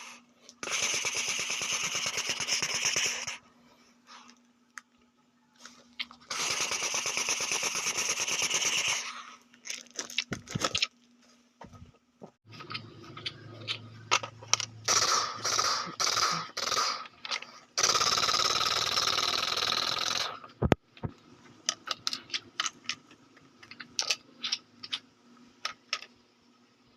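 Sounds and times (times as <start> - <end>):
toy guns rapid-fire bursts: 0.6 - 3.4, 6.3 - 9.1, 14.8 - 17.2, 17.8 - 20.4.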